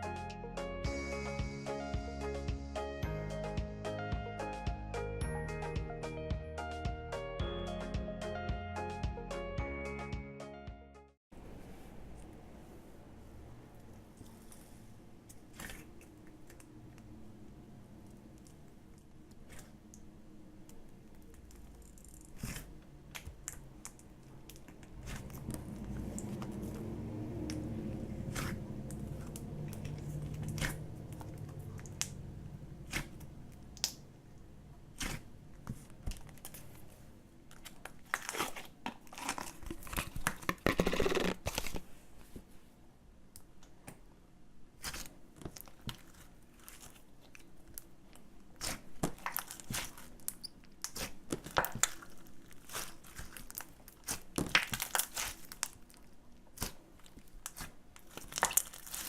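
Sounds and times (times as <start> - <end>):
slime crackling and tearing: 37.6 - 41.7, 48.6 - 59.0.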